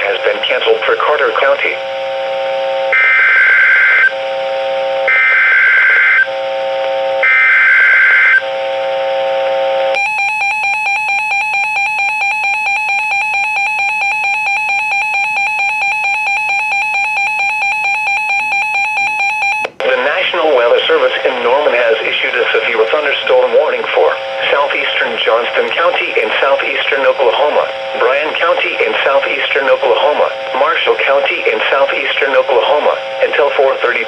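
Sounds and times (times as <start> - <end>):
buzzing digital header tones: 0.0 - 8.6
steady attention tone: 0.0 - 34.0.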